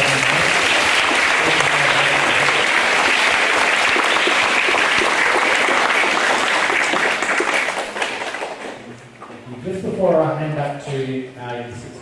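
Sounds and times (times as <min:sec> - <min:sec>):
children clapping in applause: 0:00.0 - 0:08.8.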